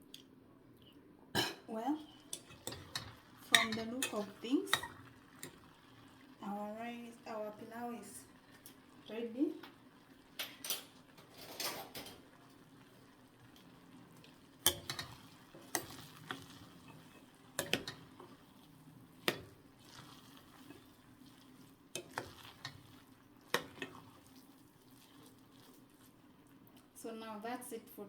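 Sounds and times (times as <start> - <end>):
spoon stirring rice in pot: 2.0 - 6.2, 9.7 - 26.8
spoon knocking against pot: 2.4 - 5.6, 14.6 - 16.0, 16.9 - 18.1.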